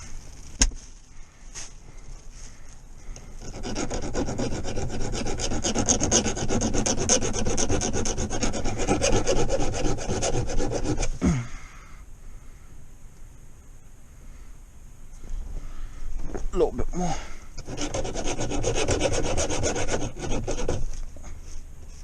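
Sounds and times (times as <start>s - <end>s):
hand file rasping on metal: 3.4s - 11.1s, 17.6s - 20.9s.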